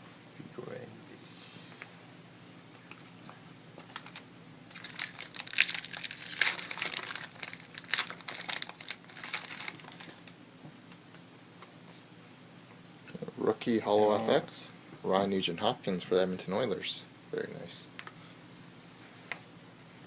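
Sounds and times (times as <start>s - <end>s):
wrapper crinkling: 3.9s - 10.3s.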